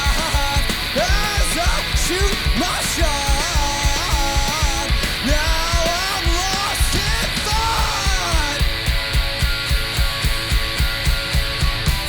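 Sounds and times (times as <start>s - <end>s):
distorted electric guitar: 0.0s - 12.0s
fast drum beat: 0.0s - 12.0s.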